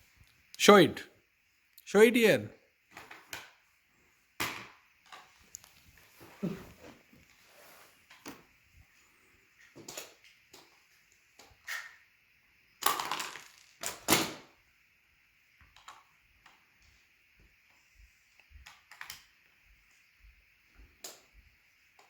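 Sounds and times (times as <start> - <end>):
plastic pieces clicking and knocking: 12.8 - 14.4.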